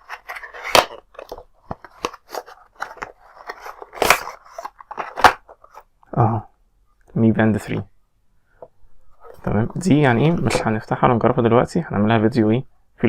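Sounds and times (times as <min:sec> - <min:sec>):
packaging crackling and crinkling: 0:00.0 - 0:05.8.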